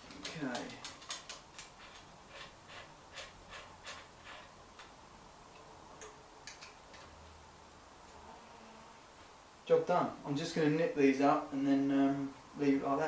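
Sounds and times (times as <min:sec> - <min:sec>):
tool ticking on bike parts: 0:00.0 - 0:04.1.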